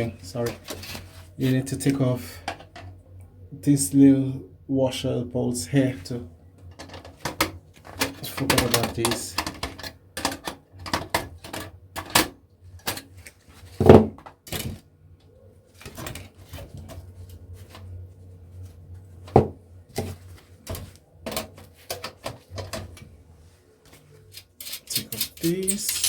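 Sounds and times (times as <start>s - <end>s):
hand tools clicking on metal: 24.4s - 26.0s.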